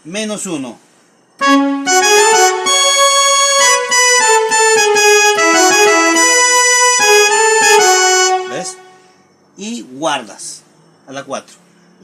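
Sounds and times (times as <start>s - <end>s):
electronic keyboard trombone melody: 1.4s - 9.1s.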